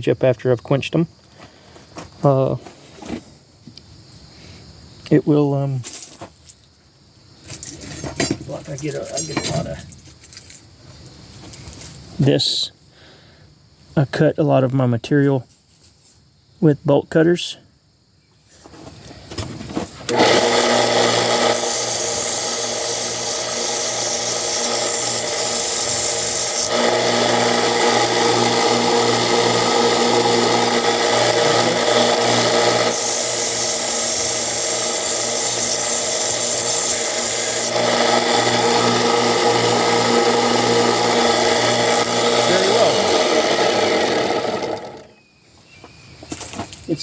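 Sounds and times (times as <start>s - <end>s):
metal grinding on sanding belt: 7.6s - 9.9s, 20.1s - 45.2s
belt sander motor hum: 20.1s - 45.2s.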